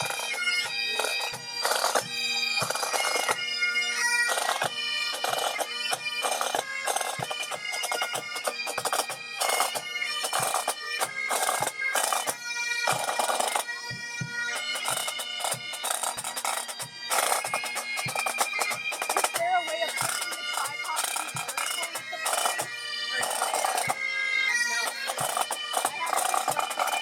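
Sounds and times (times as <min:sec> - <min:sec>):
bagpipes playing a tune: 0:00.0 - 0:27.0
drum strokes: 0:04.3 - 0:24.0, 0:24.8 - 0:27.0.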